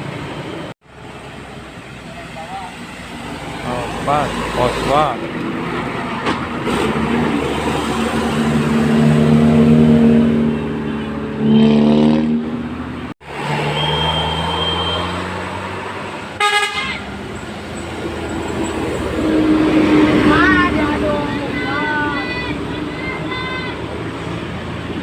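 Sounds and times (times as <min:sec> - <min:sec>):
bus engine running low: 0:00.0 - 0:11.4, 0:15.4 - 0:25.0
musical air horn tune: 0:16.4 - 0:17.0.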